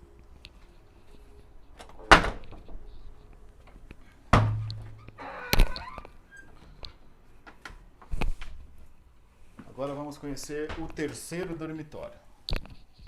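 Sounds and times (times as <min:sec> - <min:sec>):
loud sharp knocks: 0:04.3 - 0:04.8.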